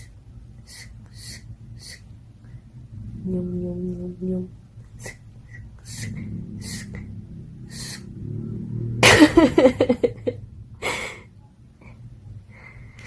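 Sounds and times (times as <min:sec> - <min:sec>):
rapid stuttering wavering sound: 0:05.7 - 0:10.6.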